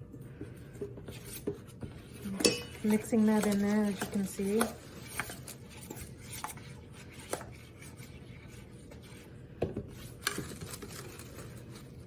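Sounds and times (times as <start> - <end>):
spoon scraping in bowl: 1.1 - 9.3
spoon clinking against bowl: 2.4 - 3.1.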